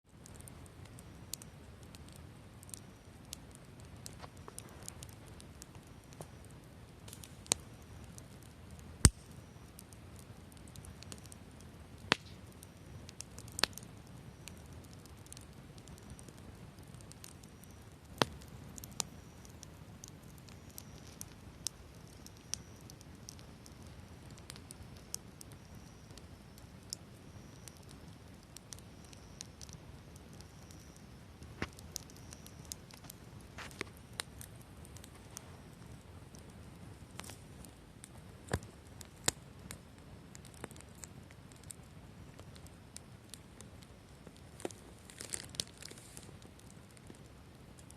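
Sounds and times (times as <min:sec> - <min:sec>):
wood fire crackling: 0:00.1 - 0:47.9
burning wood popping: 0:00.2 - 0:47.9.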